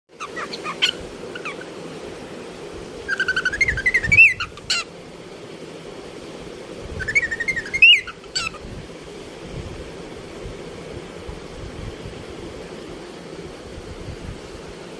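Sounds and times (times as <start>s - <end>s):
cockatiel chirping and warbling: 0.2s - 1.7s, 3.1s - 4.9s, 7.0s - 8.6s.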